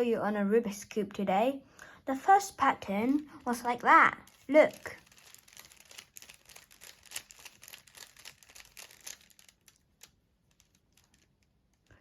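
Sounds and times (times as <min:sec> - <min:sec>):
puzzle cube clicking as twisted: 0:04.3 - 0:11.9.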